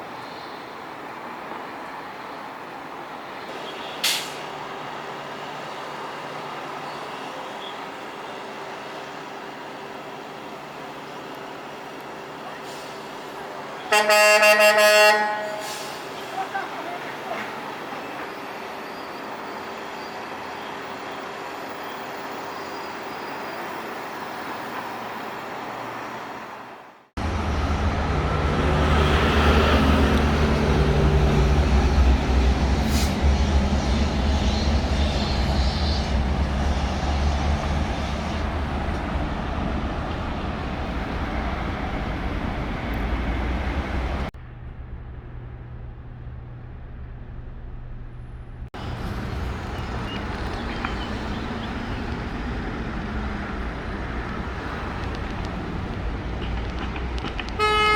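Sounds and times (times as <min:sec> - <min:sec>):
street traffic: 0:00.0 - 0:57.9
vehicle engine rumbling past: 0:27.2 - 0:57.6
steady engine hum: 0:27.2 - 0:57.9.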